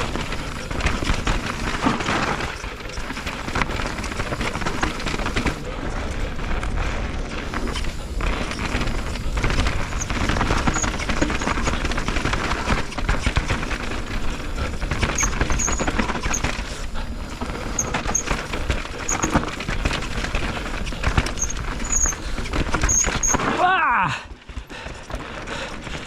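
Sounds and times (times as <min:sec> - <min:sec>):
bike tyres clattering over trail: 0:00.0 - 0:26.0
disc brakes squealing: 0:07.7 - 0:11.8, 0:15.0 - 0:16.5, 0:21.3 - 0:23.5.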